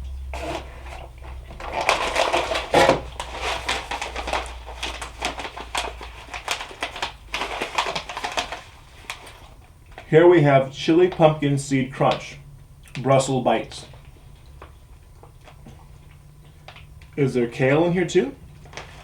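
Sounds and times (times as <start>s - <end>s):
plastic packaging crinkling: 0.4s - 10.1s, 13.6s - 19.0s.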